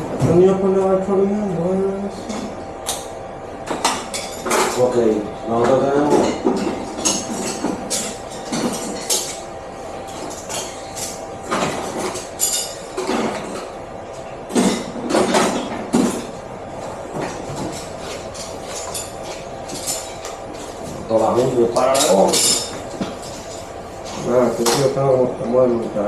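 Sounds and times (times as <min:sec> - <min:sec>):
metal tools clinking and knocking: 0:21.8 - 0:23.6.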